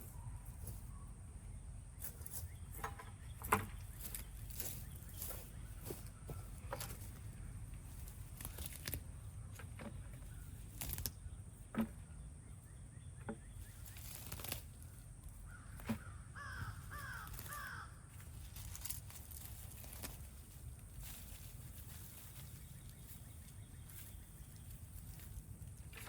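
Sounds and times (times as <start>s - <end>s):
plants pulled up rustling: 2.0s - 11.9s, 13.5s - 26.0s
bird calling: 2.0s - 20.2s.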